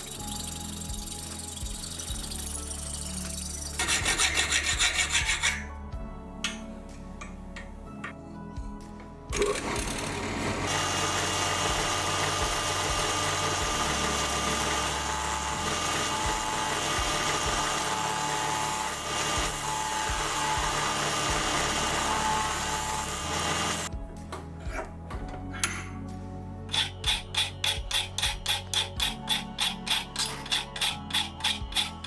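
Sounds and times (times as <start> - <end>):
power tool whirring: 0.0 - 5.6, 9.4 - 23.9, 26.7 - 32.0
background music: 0.0 - 32.0.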